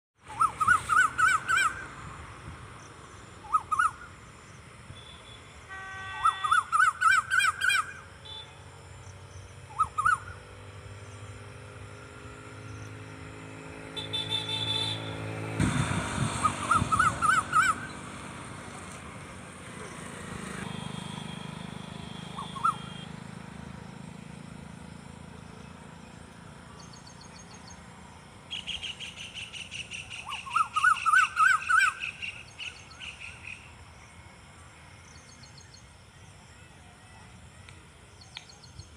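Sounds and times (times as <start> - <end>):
birds chirping: 2.8 - 5.4, 6.2 - 10.4, 19.3 - 33.8.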